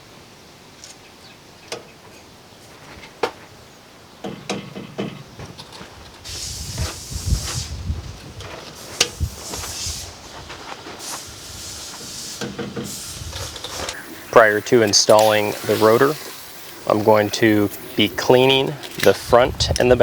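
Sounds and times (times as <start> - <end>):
hiss with low rumble: 6.2 - 20.0.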